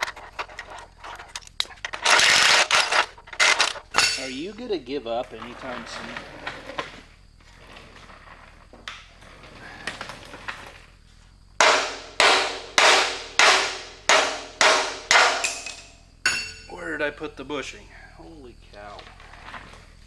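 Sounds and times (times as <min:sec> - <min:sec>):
faint handling noises: 0:00.0 - 0:07.0
hammer striking metal: 0:02.0 - 0:04.4, 0:11.6 - 0:16.7.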